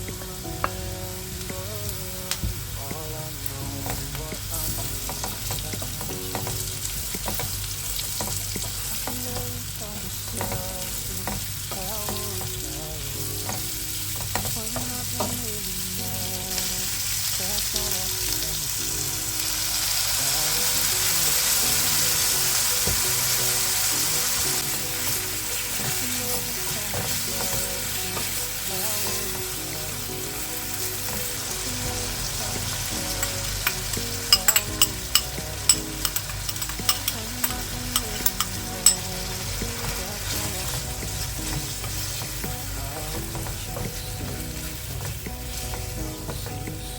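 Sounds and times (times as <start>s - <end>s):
food sizzling in oil: 0.0s - 46.8s
utensil knocking on pan: 33.2s - 39.0s.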